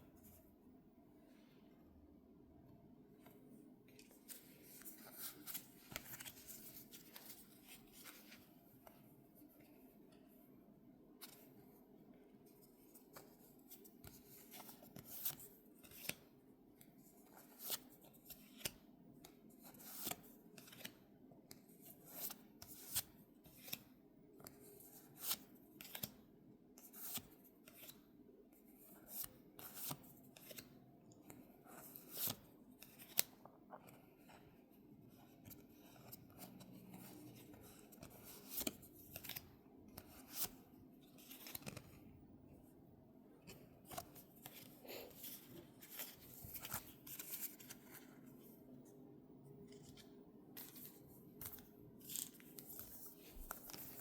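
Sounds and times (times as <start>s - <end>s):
trading cards being handled: 4.0s - 8.4s, 41.2s - 42.0s, 43.5s - 48.2s, 49.7s - 54.0s.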